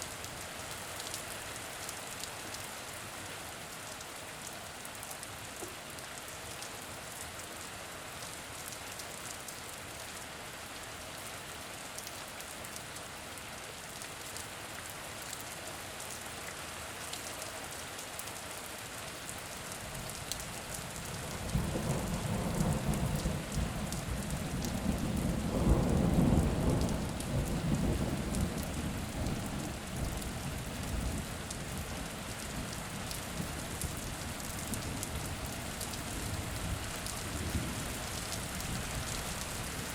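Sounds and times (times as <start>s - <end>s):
steady rain falling: 0.0s - 39.9s
low roll of thunder: 21.4s - 30.2s.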